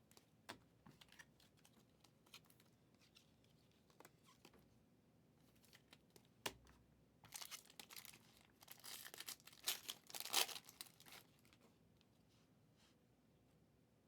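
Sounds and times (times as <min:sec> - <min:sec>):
foil wrappers crinkling and tearing: 0:07.3 - 0:11.6.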